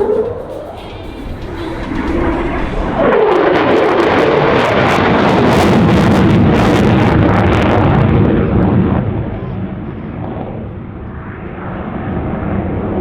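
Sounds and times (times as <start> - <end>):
jet fighter passing low: 0.0 - 13.0.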